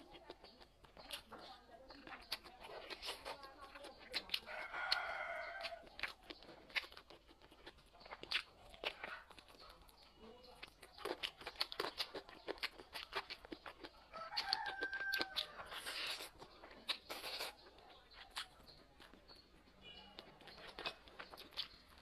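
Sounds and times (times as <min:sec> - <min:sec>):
food being torn and chewed: 0:00.0 - 0:22.0
rooster crowing: 0:04.5 - 0:05.8, 0:14.1 - 0:15.6.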